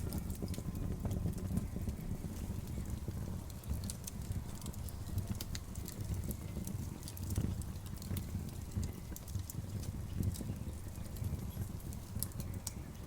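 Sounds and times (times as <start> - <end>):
campfire wood crackling and popping: 0.0 - 13.0
fire low rumble: 0.0 - 13.0.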